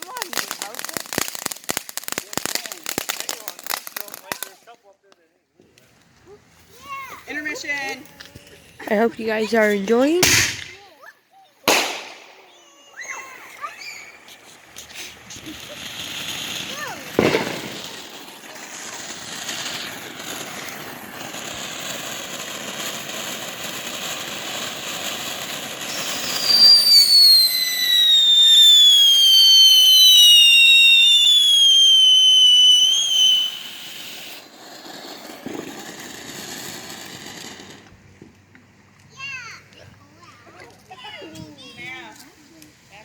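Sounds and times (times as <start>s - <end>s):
firework hissing: 0.0s - 4.5s, 6.7s - 10.9s, 11.7s - 38.0s
falling firework whistle: 10.2s - 10.8s, 11.7s - 22.2s, 22.8s - 37.8s.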